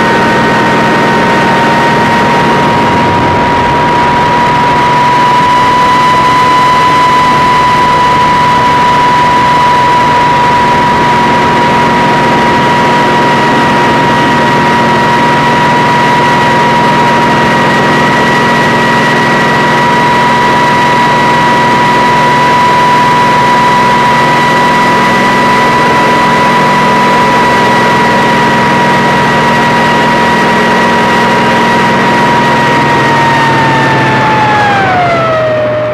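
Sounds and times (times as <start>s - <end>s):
helicopter engine drone: 0.0s - 35.9s
helicopter whine: 0.0s - 35.9s.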